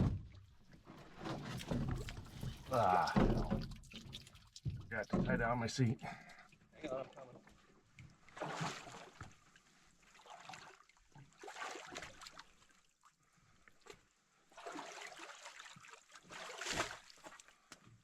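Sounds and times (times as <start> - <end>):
canoe paddle strokes in water: 0.0 - 5.3, 8.3 - 12.6, 14.5 - 17.5
water dripping from paddle: 1.4 - 8.4.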